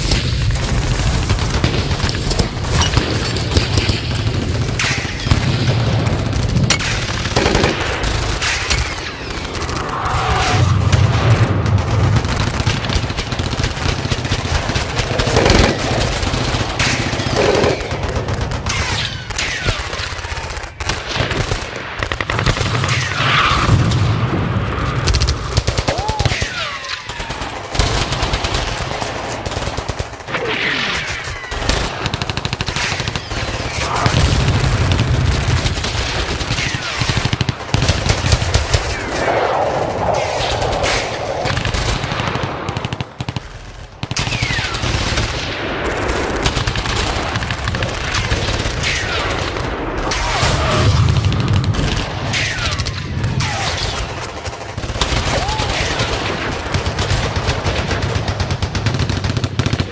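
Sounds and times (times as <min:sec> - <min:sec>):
machine-gun and rifle fire: 0:00.0 - 0:59.9
low booms: 0:05.4 - 0:13.3, 0:38.8 - 0:43.2.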